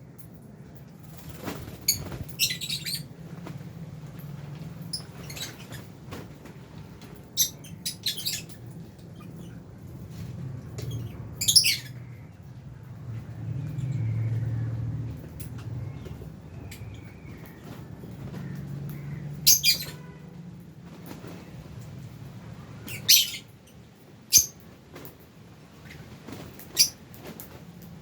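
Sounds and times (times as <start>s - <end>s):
lovebirds chirping: 1.7s - 3.1s, 4.8s - 5.9s, 7.2s - 9.6s, 10.8s - 12.4s, 13.6s - 20.1s, 22.8s - 23.6s.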